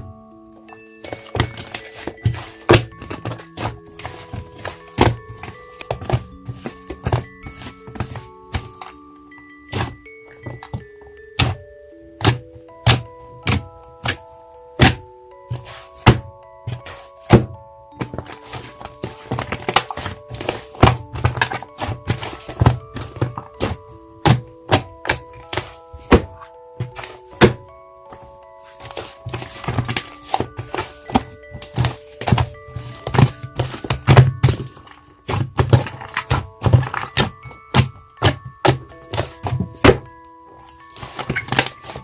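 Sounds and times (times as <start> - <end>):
soft background music: 0.0 - 42.0.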